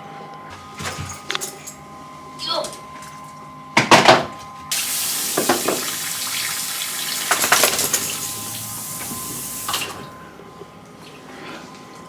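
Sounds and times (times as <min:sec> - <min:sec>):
water running from a tap: 0:04.7 - 0:10.2.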